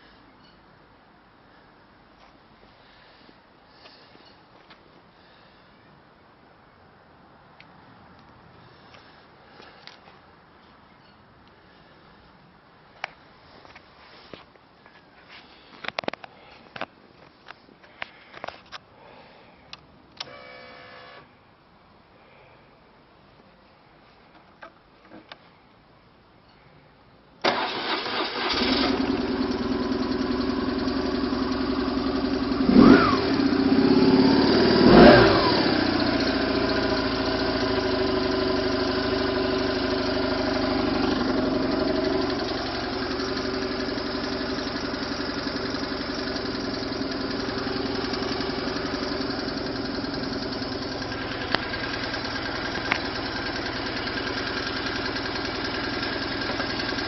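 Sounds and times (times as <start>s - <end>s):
motorcycle engine revving and idling: 28.5s - 57.0s.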